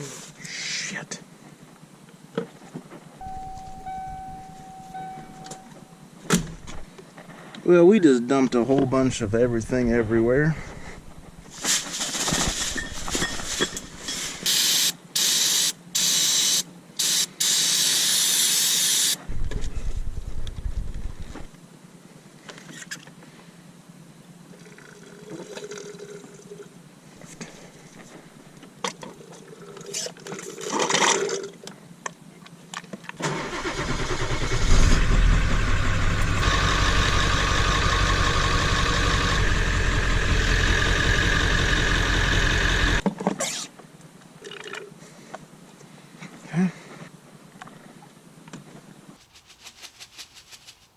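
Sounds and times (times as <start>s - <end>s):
loud hissing bursts: 14.1s - 19.2s
diesel engine starting and idling: 33.2s - 43.0s.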